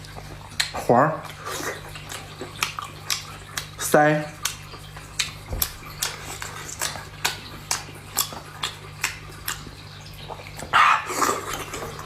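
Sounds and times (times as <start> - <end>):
wet mouth clicks and smacks: 0.1 - 3.8, 4.4 - 9.7
slurp: 11.0 - 12.0.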